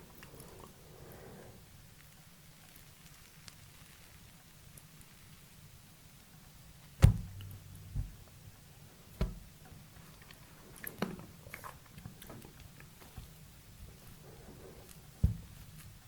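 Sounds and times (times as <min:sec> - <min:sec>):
loud thump: 0:07.0 - 0:08.4, 0:09.2 - 0:09.5
small knocks: 0:07.0 - 0:08.5, 0:09.2 - 0:09.8, 0:15.2 - 0:16.0.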